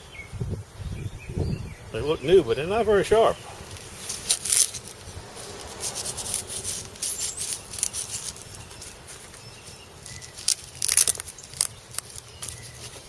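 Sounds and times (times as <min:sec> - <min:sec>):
rustling handling noise: 0:03.3 - 0:13.0.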